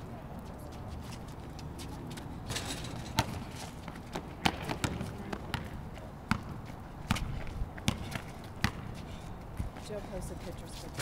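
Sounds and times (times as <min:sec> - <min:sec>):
basketball bouncing on court: 0:03.1 - 0:09.0.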